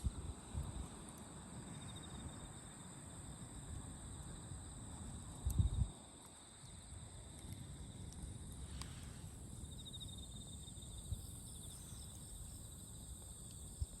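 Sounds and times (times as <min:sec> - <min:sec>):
insects trilling: 0:01.7 - 0:14.0
faint click: 0:08.1 - 0:09.0.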